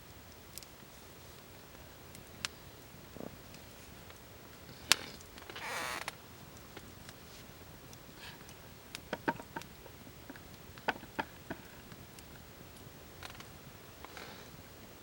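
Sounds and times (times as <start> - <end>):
burning wood hissing: 0.5 - 15.0
campfire pops and snaps: 7.8 - 14.3.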